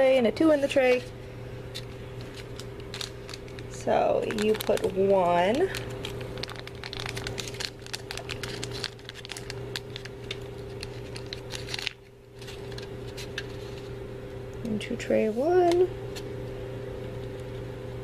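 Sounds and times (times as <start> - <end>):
powder packet crinkling and rustling: 1.7 - 14.0.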